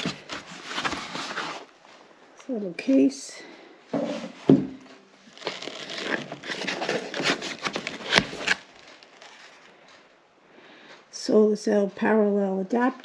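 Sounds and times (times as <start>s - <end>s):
plastic packaging crinkling: 0.0s - 1.8s, 5.1s - 10.0s
knocks: 4.0s - 4.9s.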